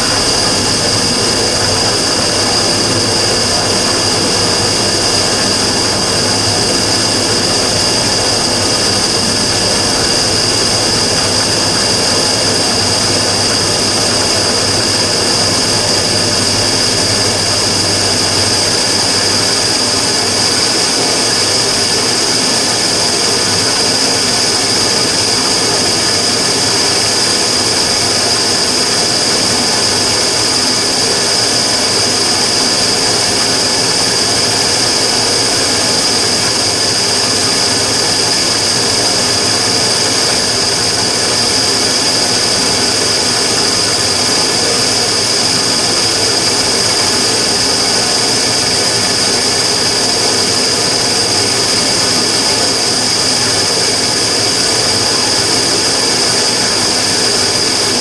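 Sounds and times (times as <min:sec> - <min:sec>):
tube burner roaring with whistle: 0:00.0 - 0:58.0.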